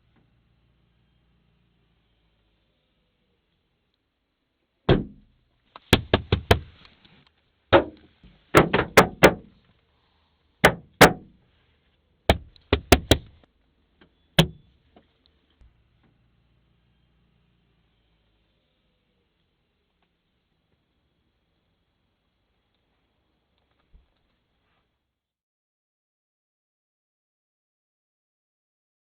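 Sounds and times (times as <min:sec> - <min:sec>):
knocking on hard surface: 0:05.9 - 0:06.7, 0:08.6 - 0:09.4, 0:12.3 - 0:13.3.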